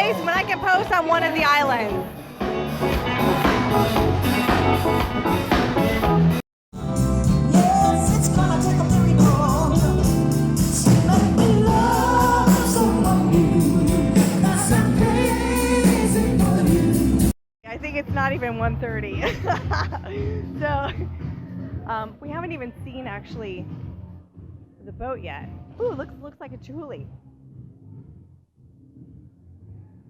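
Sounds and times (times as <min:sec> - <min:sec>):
music accompaniment: 0:00.0 - 0:17.4
person singing: 0:06.9 - 0:17.3.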